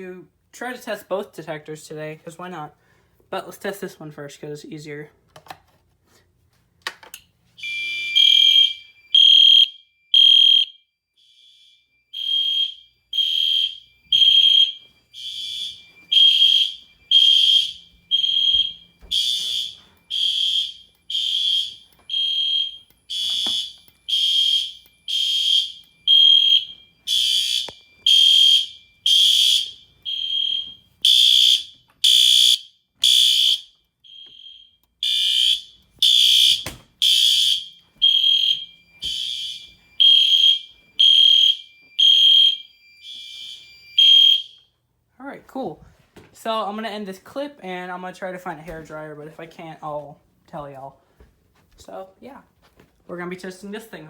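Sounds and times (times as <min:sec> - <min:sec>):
fire alarm horn blasts: 0:07.6 - 0:44.8
steady alarm tone: 0:07.6 - 0:44.8.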